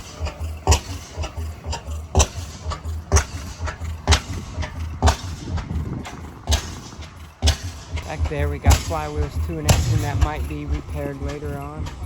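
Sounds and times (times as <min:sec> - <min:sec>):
antique engine running slowly: 0:00.0 - 0:12.0
loud exhaust bangs: 0:09.4 - 0:11.1.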